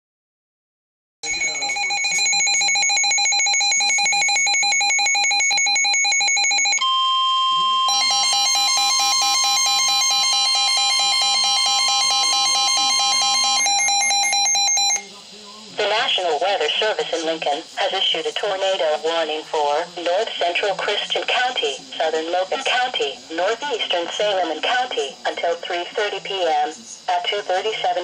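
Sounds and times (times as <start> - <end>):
rapid electronic beeping alarm: 1.2 - 15.2
steady high warning tone: 1.2 - 15.2.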